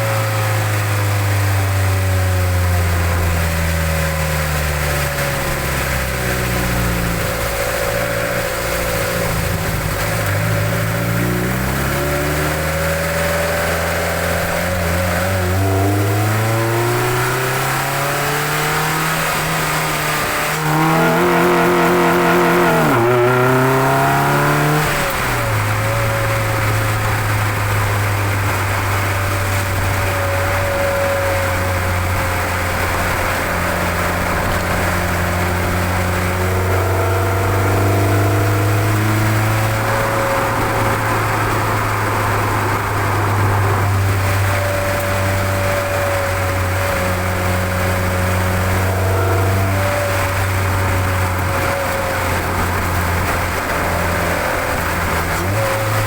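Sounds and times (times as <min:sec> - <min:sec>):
car engine revving: 0:00.0 - 0:56.0
loud engine intake noise: 0:06.6 - 0:30.0.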